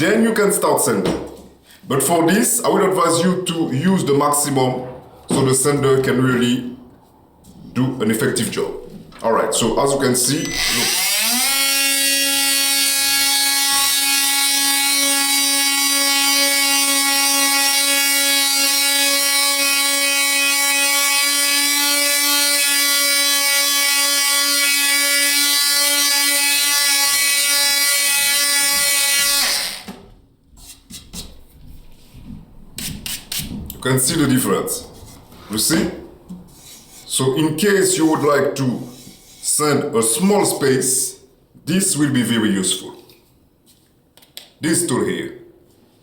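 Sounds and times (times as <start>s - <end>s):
oscillating tool buzzing: 10.4s - 29.9s.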